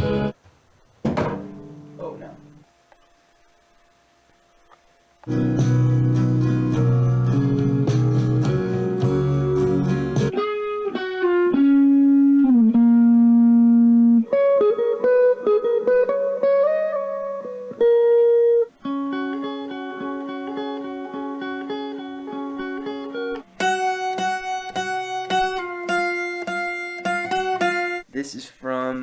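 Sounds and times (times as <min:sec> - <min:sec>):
guitar background music: 0:00.0 - 0:00.4, 0:01.1 - 0:02.6, 0:05.2 - 0:28.1.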